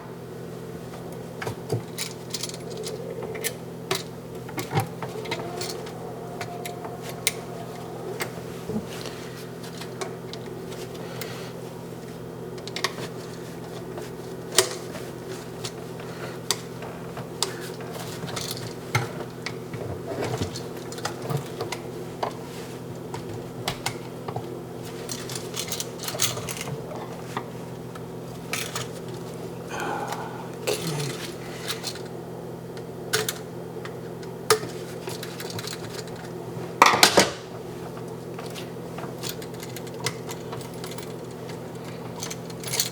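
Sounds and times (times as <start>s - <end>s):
steady low hum: 0.0s - 14.4s, 29.1s - 32.7s.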